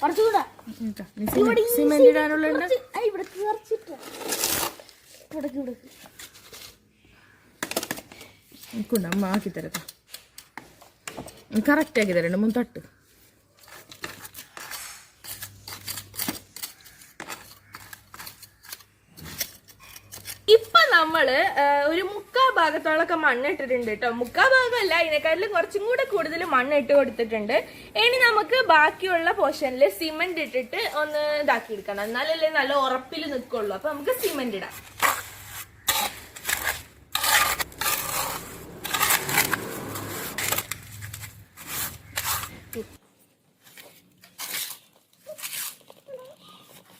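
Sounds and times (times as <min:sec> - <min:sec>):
soil scraping and crunching in bucket: 0:03.2 - 0:06.8, 0:34.1 - 0:43.0.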